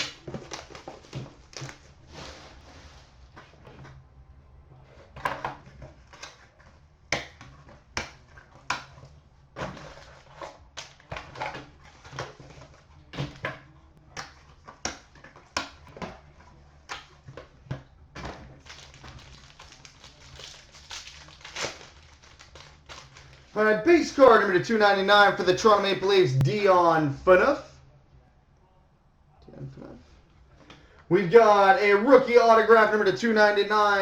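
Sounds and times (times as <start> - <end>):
wrapping and cardboard crinkling: 0.0 - 3.3, 18.3 - 23.6.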